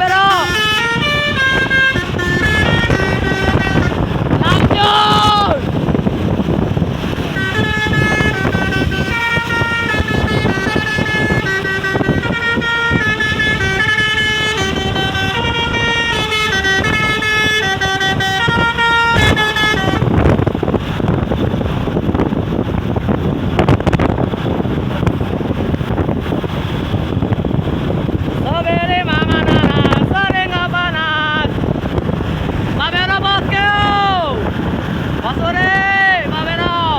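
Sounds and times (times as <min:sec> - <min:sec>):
musical bus horn playing a tune: 0:00.0 - 0:05.3, 0:06.8 - 0:20.6
steady noisy rumble: 0:00.0 - 0:36.9.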